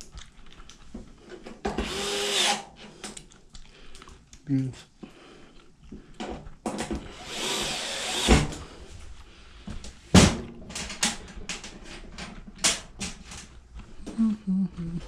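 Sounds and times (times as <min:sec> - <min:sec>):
parts and tools clattering: 0:10.1 - 0:13.6.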